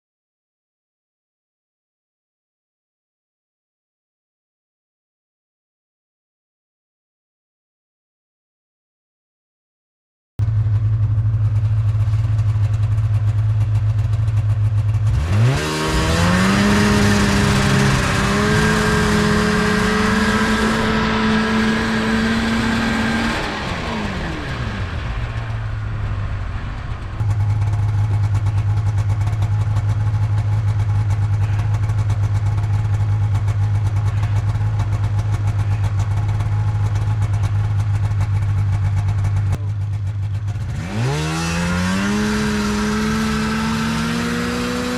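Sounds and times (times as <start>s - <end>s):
snowmobile engine revving: 14.8s - 44.9s.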